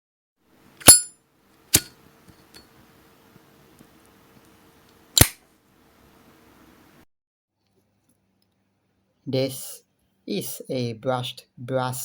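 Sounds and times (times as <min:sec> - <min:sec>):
lighter lid clicking open and shut: 0:05.2 - 0:05.4.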